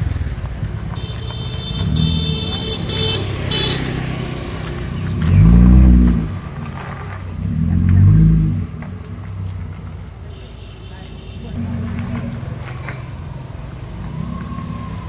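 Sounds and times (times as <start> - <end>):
car engine revving: 0.0 - 9.9, 11.4 - 13.1.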